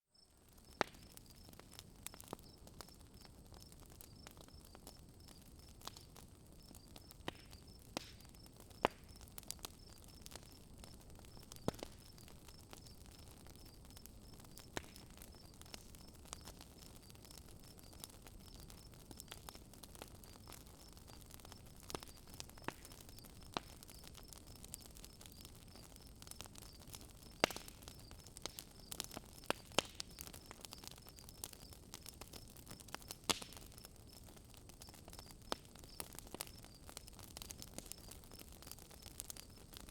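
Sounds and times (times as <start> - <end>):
campfire crackling and popping: 0.2 - 39.9
insects chirping: 11.3 - 34.2, 34.8 - 39.7.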